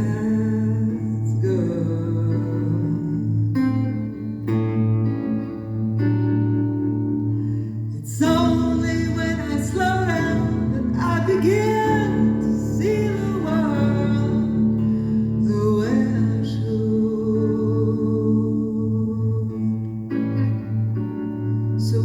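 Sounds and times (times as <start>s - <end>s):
woman singing slow melody: 0.0s - 4.2s, 8.0s - 20.7s, 21.6s - 22.0s
acoustic guitar chords: 0.0s - 22.0s.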